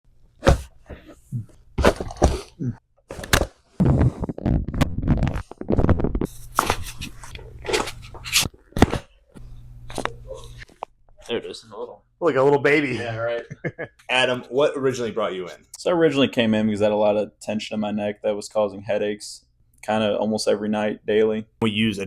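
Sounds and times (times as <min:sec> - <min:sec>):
spinal joints cracking: 0:01.0 - 0:09.0.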